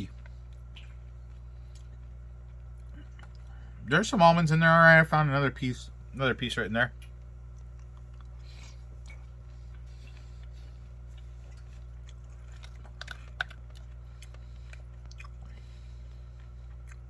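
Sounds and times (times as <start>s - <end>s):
person chewing crunchy cereal: 0.0s - 3.8s, 7.0s - 17.0s
steady low hum: 0.0s - 17.0s.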